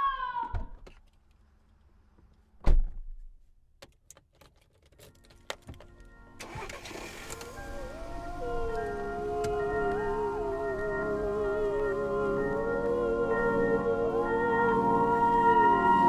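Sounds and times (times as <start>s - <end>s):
music: 5.0s - 16.0s
car door shutting: 6.4s - 10.3s.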